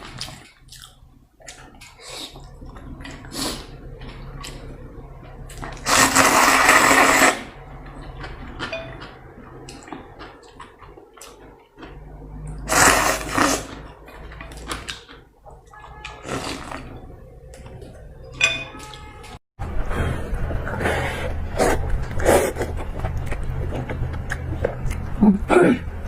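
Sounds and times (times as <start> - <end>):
loud slurps of noodles: 5.8 - 7.5, 12.7 - 13.8
chewing: 7.8 - 16.8, 21.6 - 25.2.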